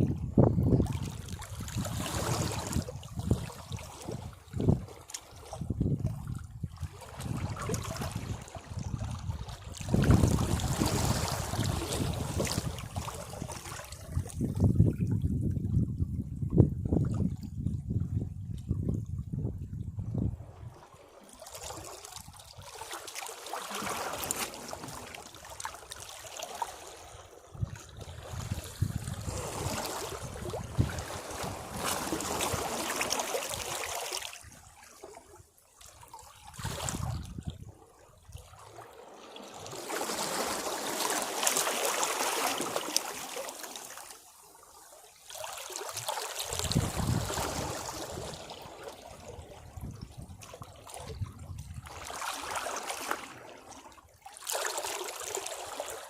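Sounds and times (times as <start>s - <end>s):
sea waves washing against rocks: 9.8s - 13.8s, 23.4s - 25.3s, 28.4s - 34.1s, 39.0s - 44.0s, 46.2s - 48.9s.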